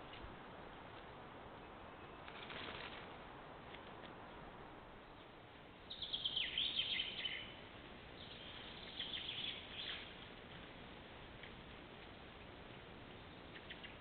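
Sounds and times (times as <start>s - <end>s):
microphone hiss: 0.0s - 14.0s
small bird chirping: 5.1s - 7.6s, 8.2s - 10.2s, 13.1s - 14.0s.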